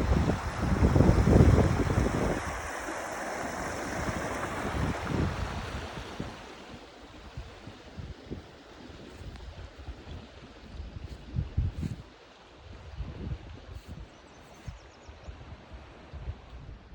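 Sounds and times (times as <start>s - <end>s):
stream water rushing: 0.0s - 11.2s
wind buffeting microphone: 0.0s - 16.9s.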